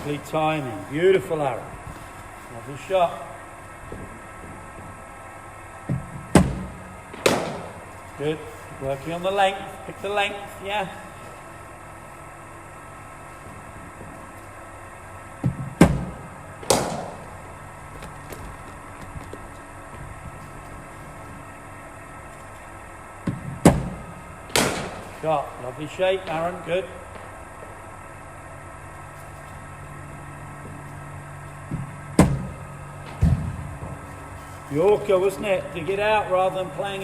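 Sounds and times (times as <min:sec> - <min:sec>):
steady low hum: 0:00.0 - 0:37.0
bowling machine thump: 0:05.8 - 0:07.8, 0:15.4 - 0:17.4, 0:23.2 - 0:25.2, 0:31.6 - 0:34.3.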